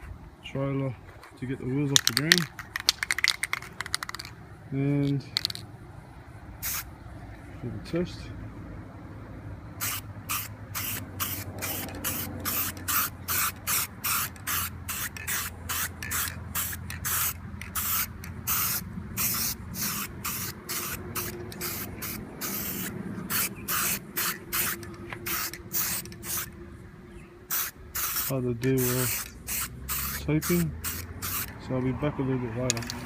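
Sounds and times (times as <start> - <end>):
aerosol spray can puffs: 9.8 - 26.5, 27.5 - 31.6.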